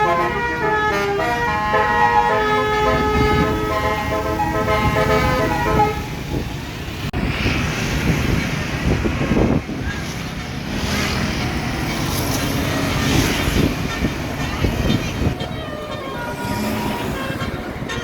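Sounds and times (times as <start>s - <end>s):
bus air horn: 0.0s - 6.2s, 15.0s - 18.0s
road traffic rumble: 0.0s - 18.0s.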